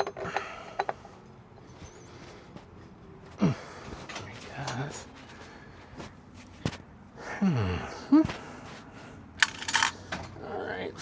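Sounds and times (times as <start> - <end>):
tools and metal parts knocking: 0.0 - 1.0, 9.4 - 10.0.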